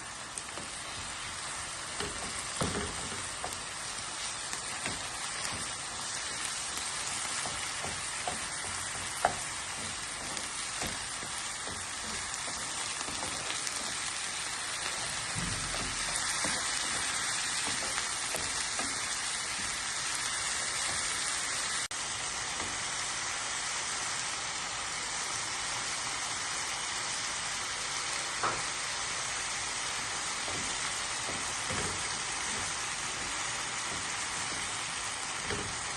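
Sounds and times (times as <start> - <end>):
food sizzling in a frying pan: 0.0 - 35.9
utensil clicking against pan: 2.0 - 14.1.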